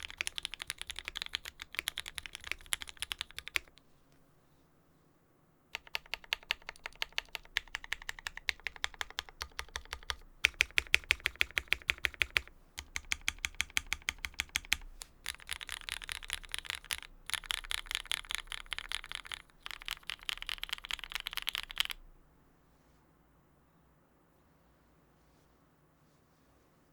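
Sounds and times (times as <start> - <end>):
keyboard keystroke clacks: 0.0 - 3.8, 5.8 - 22.0.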